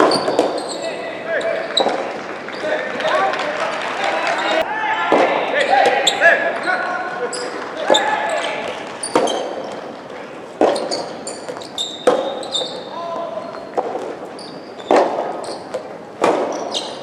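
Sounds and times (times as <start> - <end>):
shoes squeaking on court floor: 0.0 - 3.5, 4.1 - 4.6, 5.6 - 17.0
tennis ball struck by rackets: 9.0 - 9.8, 10.6 - 12.4, 13.7 - 16.8.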